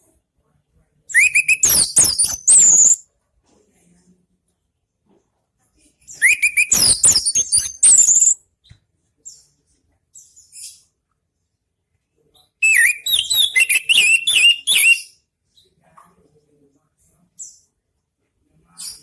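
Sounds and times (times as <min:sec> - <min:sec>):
thrush singing whistled notes: 0:01.2 - 0:03.0, 0:06.2 - 0:08.4, 0:12.6 - 0:15.1.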